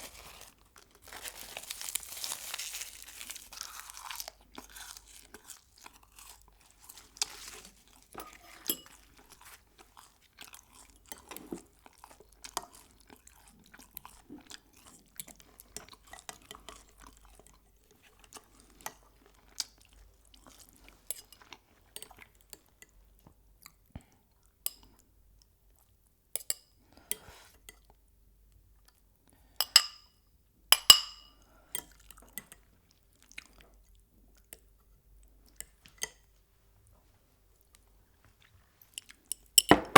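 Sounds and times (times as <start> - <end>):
tableware clinking: 29.6 - 30.1, 30.8 - 31.3, 39.6 - 39.9.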